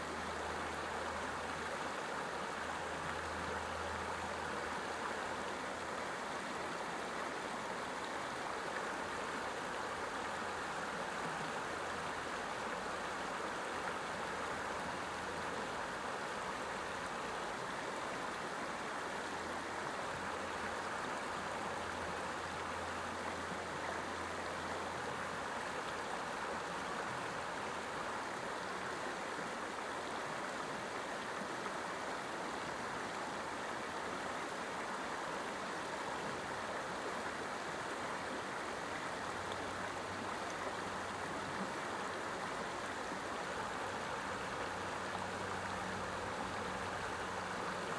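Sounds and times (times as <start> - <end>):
creek water rushing over rapids: 0.0 - 47.9.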